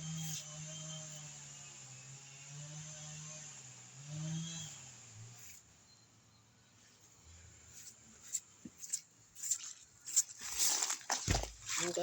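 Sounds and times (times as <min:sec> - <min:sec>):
chainsaw engine: 0:00.0 - 0:05.5.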